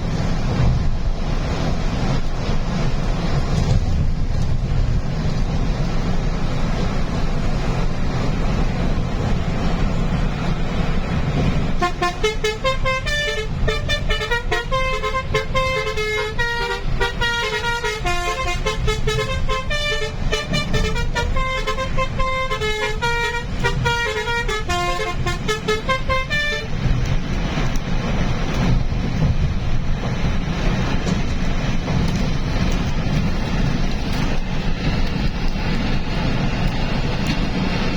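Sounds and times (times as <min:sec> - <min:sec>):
truck engine and road noise: 0:00.0 - 0:37.9
musical horn playing a tune: 0:11.8 - 0:26.8.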